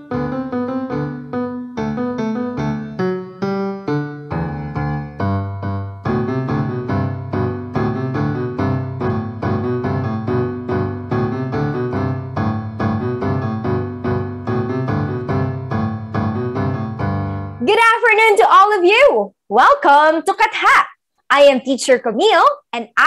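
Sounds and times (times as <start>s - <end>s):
piano music: 0.0s - 17.7s.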